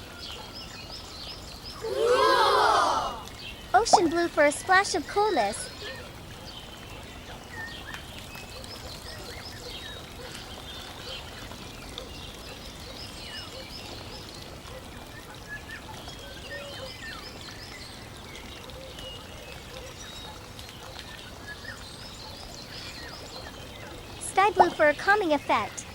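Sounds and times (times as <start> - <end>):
small birds chirping: 0.0 - 25.9
running water rushing: 1.7 - 15.4, 19.4 - 25.9.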